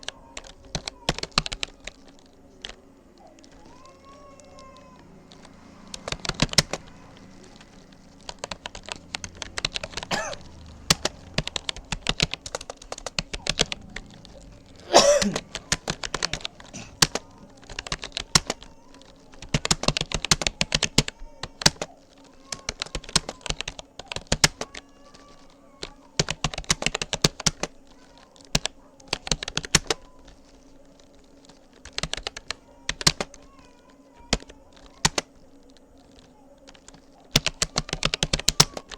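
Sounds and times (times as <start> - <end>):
typing on computer keyboard: 0.0 - 38.9.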